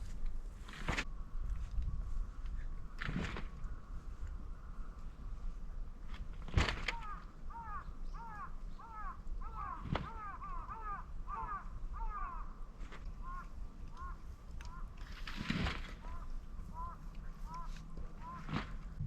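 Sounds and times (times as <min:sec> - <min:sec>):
crow cawing: 0:06.9 - 0:15.0, 0:16.0 - 0:18.8.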